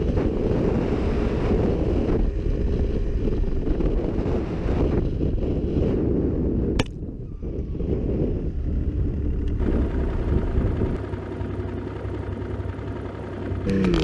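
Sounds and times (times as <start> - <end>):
wind buffeting microphone: 0.0 - 11.0
snowmobile engine rumbling: 0.0 - 14.0.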